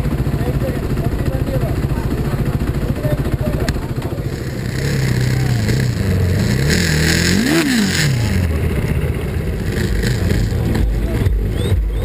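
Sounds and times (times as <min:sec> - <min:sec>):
motorcycle engine revving: 0:00.0 - 0:12.0.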